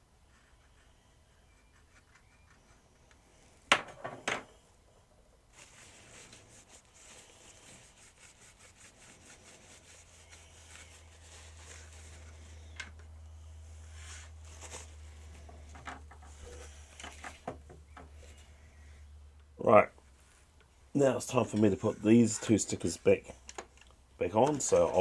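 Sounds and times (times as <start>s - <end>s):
low steady hum: 0.0s - 25.0s
hands rubbing plastic: 5.5s - 13.2s.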